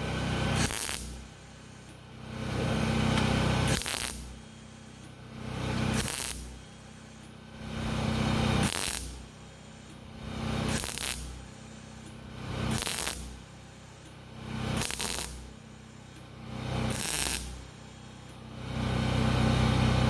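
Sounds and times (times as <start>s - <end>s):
welder humming and crackling: 0.0s - 20.0s.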